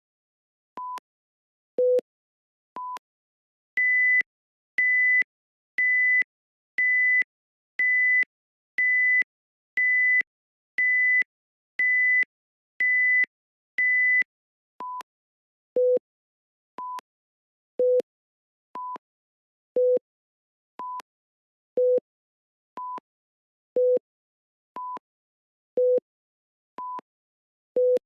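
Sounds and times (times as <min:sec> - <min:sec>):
alternating tick-tock beeps: 0:00.8 - 0:01.0, 0:01.8 - 0:02.1, 0:02.8 - 0:03.0, 0:03.8 - 0:15.1, 0:15.8 - 0:16.0, 0:16.8 - 0:17.1, 0:17.8 - 0:18.1, 0:18.8 - 0:19.0, 0:19.7 - 0:20.0, 0:20.8 - 0:21.1, 0:21.8 - 0:22.0, 0:22.8 - 0:23.1, 0:23.8 - 0:24.0, 0:24.8 - 0:25.0, 0:25.8 - 0:26.0, 0:26.8 - 0:27.1, 0:27.8 - 0:28.0.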